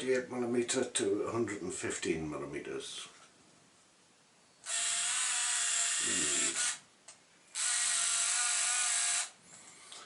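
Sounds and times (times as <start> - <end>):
camera zoom motor whine: 4.6 - 6.8, 7.5 - 9.4.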